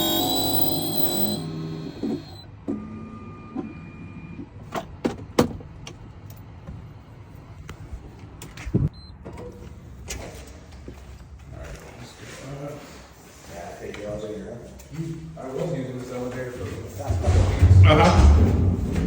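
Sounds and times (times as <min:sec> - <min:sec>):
key-cutting machine motor whining: 0:00.0 - 0:02.4.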